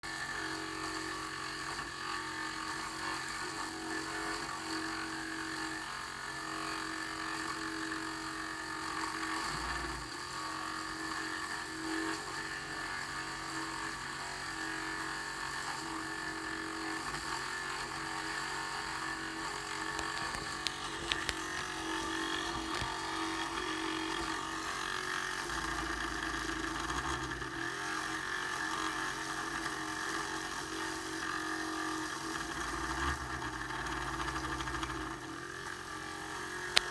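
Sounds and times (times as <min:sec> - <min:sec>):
cooling fan whirring: 0:19.7 - 0:35.6.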